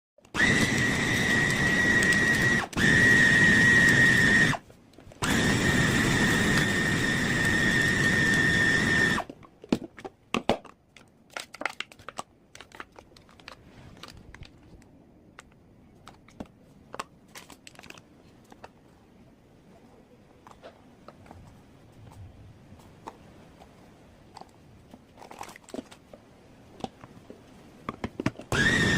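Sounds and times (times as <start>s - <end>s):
food chopper motor whining: 0.3s - 4.6s, 5.2s - 9.3s, 28.5s - 28.9s.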